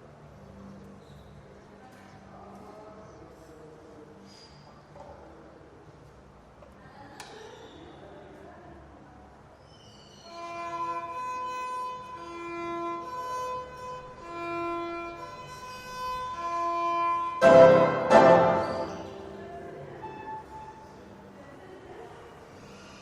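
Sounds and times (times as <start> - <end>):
harsh bowed violin strokes: 10.3 - 20.9
violin slow melody: 10.3 - 21.1.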